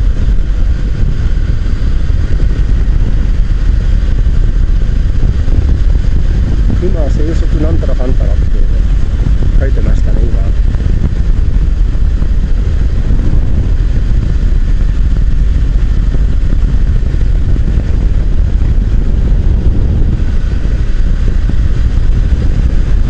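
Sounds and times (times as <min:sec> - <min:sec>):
motorcycle engine running: 0:00.0 - 0:23.0
wind rush on microphone: 0:00.0 - 0:23.0.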